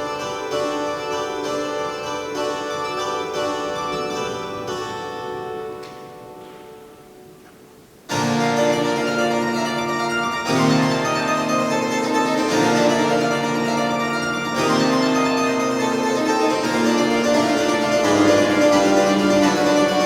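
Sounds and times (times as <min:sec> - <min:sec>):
pipe organ playing chords: 0:08.1 - 0:20.0.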